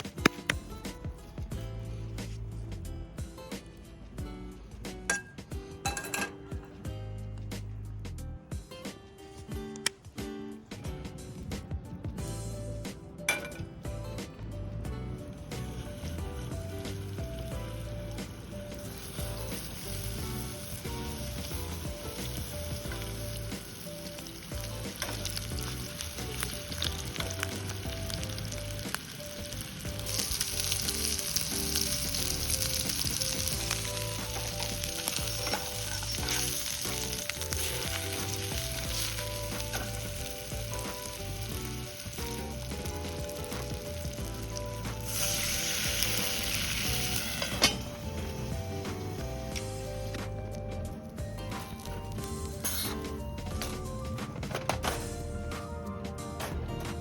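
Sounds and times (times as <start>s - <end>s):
light background music: 0.0s - 57.0s
food sizzling in a pan: 15.3s - 50.4s.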